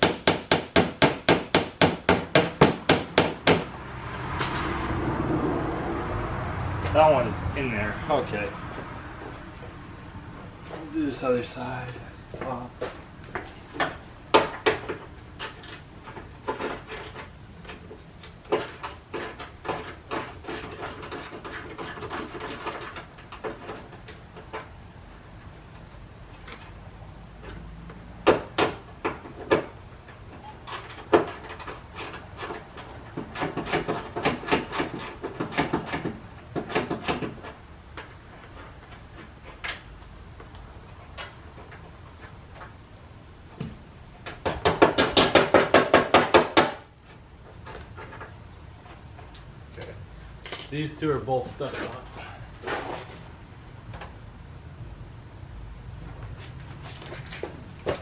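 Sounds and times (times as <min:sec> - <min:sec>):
tools and metal parts clattering: 0:30.0 - 0:40.2, 0:47.5 - 0:51.0, 0:57.0 - 0:58.0.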